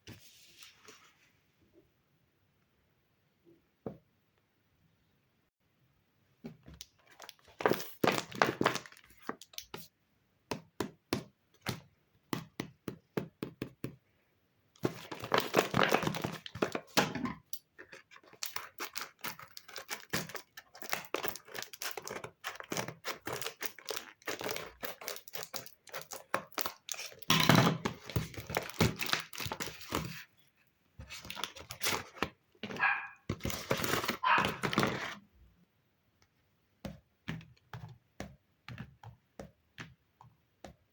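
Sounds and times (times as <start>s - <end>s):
paper crinkling: 7.0s - 9.9s, 14.8s - 17.0s, 17.6s - 27.3s, 27.9s - 30.3s, 31.0s - 35.2s.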